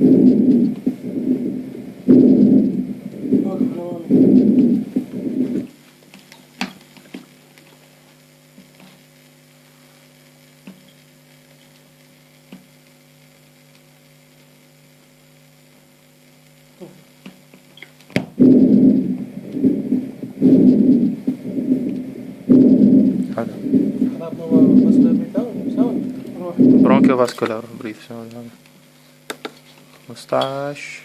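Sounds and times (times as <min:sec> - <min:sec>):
recorded lung breathing sound: 0:00.0 - 0:06.0, 0:18.3 - 0:27.3
low electrical hum: 0:00.0 - 0:31.0.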